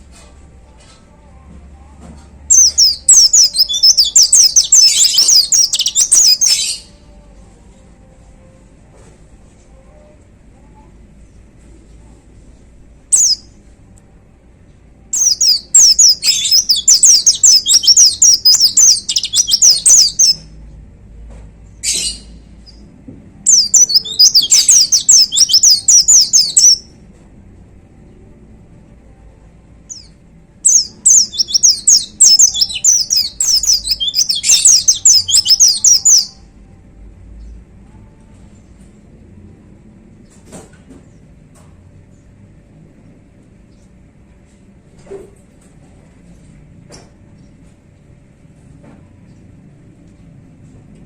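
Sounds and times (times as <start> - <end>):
bird twittering song: 2.5 - 6.9, 13.1 - 13.5, 15.2 - 20.4, 23.5 - 26.9, 29.9 - 36.4.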